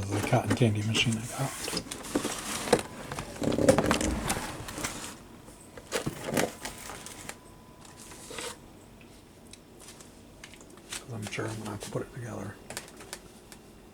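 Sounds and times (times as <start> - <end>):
packaging rustling and crinkling: 0.0 - 5.2, 5.8 - 8.6, 12.7 - 13.4.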